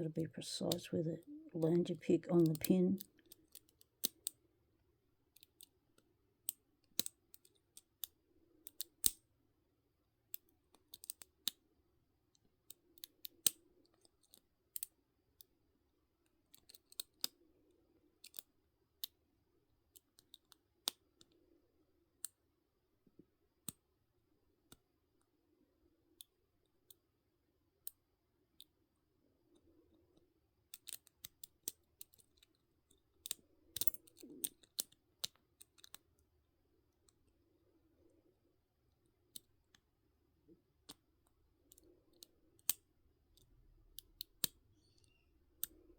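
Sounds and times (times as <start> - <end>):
faint steady hum: 0.0 - 3.2
lock pick clicking in lock: 6.4 - 8.1, 10.3 - 11.6, 33.2 - 36.0.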